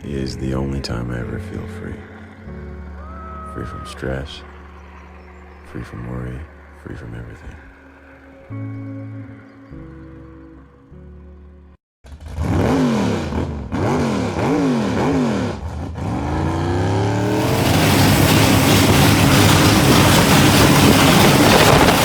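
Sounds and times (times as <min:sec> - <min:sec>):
off-road vehicle engine revving: 0:12.1 - 0:22.0.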